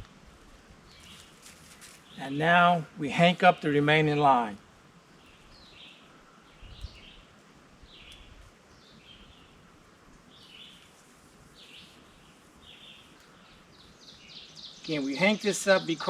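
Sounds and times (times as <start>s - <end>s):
faint songbird chirps: 0.8s - 2.5s, 5.2s - 9.6s, 10.2s - 16.0s.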